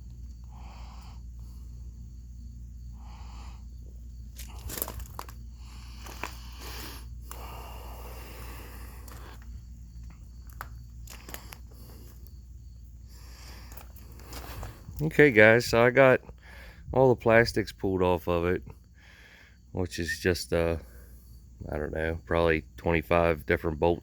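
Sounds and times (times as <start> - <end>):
steady low hum: 0.0 - 24.0
soft breaths: 0.3 - 15.0
scraping rustle: 4.4 - 5.4.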